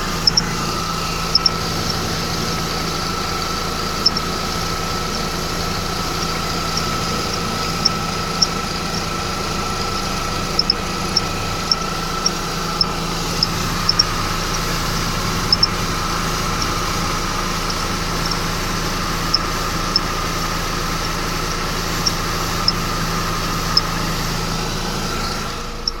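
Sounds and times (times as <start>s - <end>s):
steady high tone: 0.0s - 3.2s
car engine idling: 0.0s - 26.0s
belt squeak chirps: 0.2s - 0.4s, 1.2s - 2.0s, 4.0s - 4.3s, 9.8s - 14.7s, 15.5s - 15.8s.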